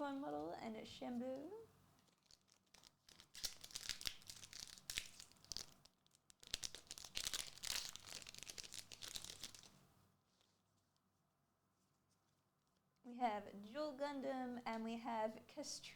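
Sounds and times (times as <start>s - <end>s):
foil pack tearing and crinkling: 2.1s - 9.7s.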